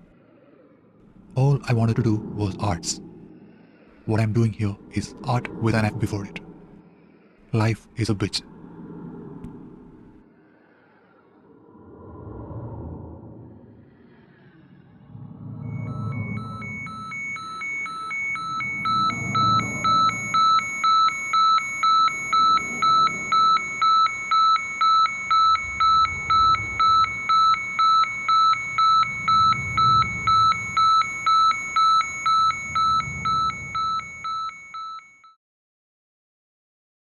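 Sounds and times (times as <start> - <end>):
low rumble: 1.0 - 6.9, 8.4 - 10.2, 11.5 - 34.5
rapid high-pitched electronic beeping: 15.6 - 35.2.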